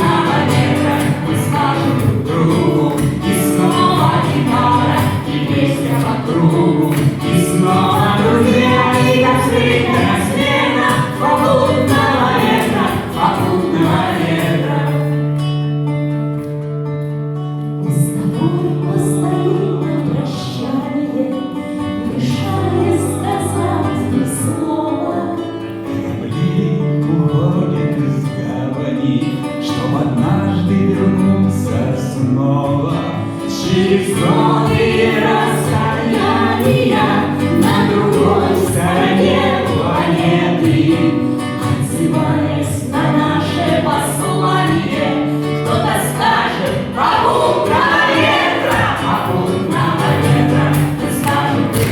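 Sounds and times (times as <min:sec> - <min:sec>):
voices singing together: 0:00.0 - 0:15.5, 0:17.8 - 0:51.9.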